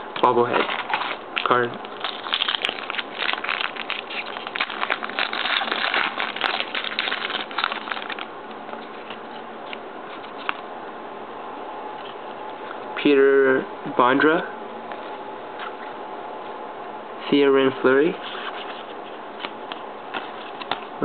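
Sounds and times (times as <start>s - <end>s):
trading cards crinkling and rustling: 0.1s - 10.7s, 18.2s - 20.9s.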